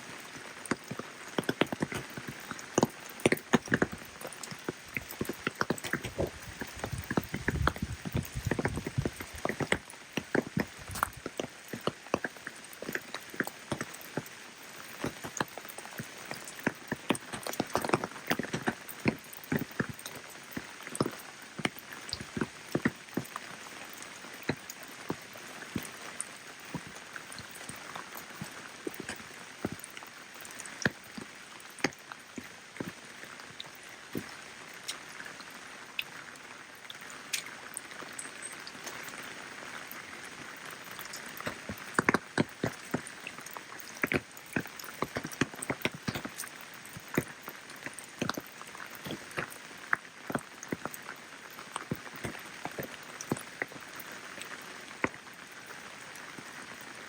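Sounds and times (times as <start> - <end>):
rain drops tapping: 0.0 - 57.0.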